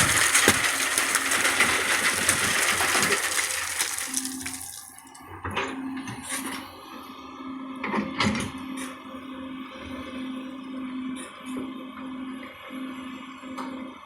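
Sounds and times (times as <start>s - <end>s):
excavator clattering and hissing: 0.0s - 4.8s.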